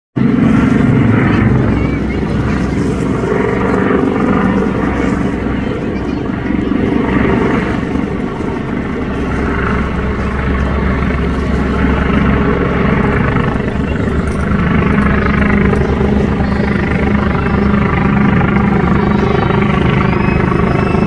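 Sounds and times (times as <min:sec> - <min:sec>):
helicopter engine noise: 0:00.2 - 0:21.0
helicopter rotor beating: 0:00.2 - 0:21.0.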